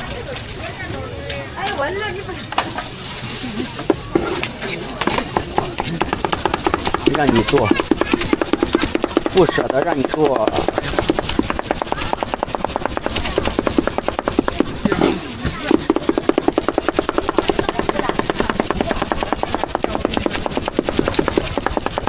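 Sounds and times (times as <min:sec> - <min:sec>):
cleaver chopping meat on board: 0:05.0 - 0:22.0.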